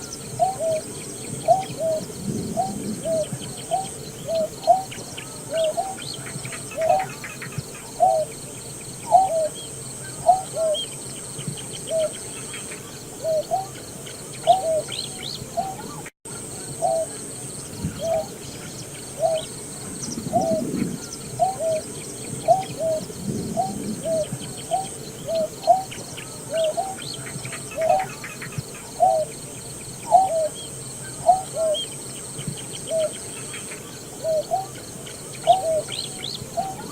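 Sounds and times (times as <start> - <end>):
bird hooting calls: 0.0 - 8.4, 9.0 - 36.9.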